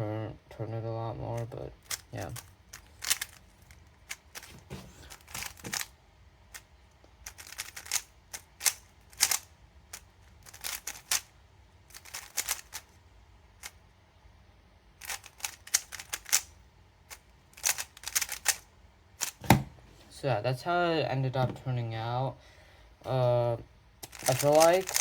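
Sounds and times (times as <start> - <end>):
puzzle cube clacking: 1.4 - 11.3, 11.9 - 13.0, 15.0 - 19.7, 24.0 - 25.0.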